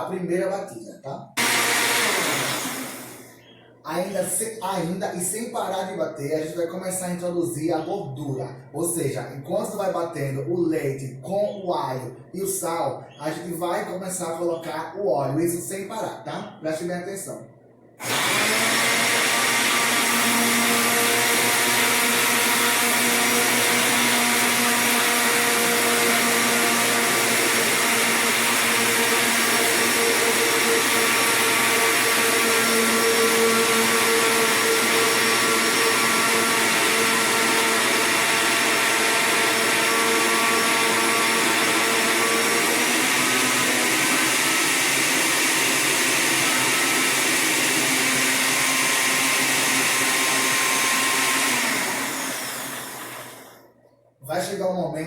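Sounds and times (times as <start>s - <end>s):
blender running: 1.4s - 3.6s, 18.0s - 53.6s.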